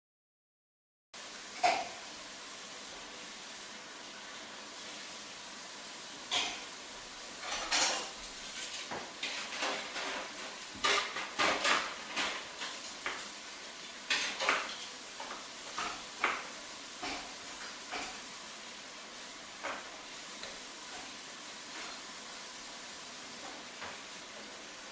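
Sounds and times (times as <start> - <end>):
utensil clinking against a dish: 6.3 - 6.7, 7.4 - 13.2.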